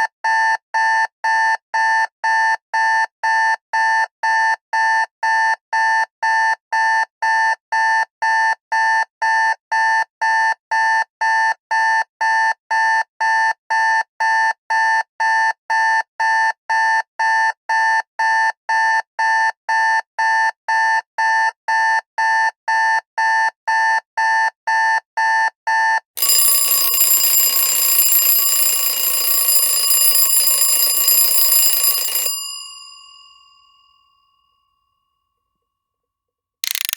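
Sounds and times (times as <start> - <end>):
alarm clock beeping rapidly: 26.2 - 33.5
continuous ringing alarm: 26.2 - 33.7.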